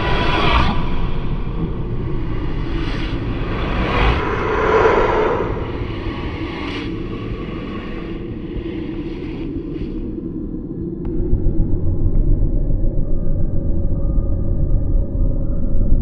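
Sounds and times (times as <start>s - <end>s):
low rumble: 0.0s - 16.0s
noisy whoosh: 2.1s - 7.6s.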